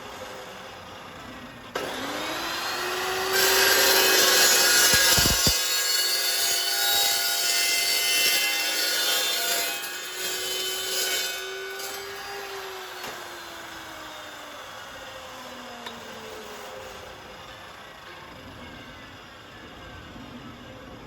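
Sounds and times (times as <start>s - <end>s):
circular saw motor whine: 0.0s - 6.4s, 11.4s - 21.0s
circular saw cutting steel: 0.0s - 18.2s.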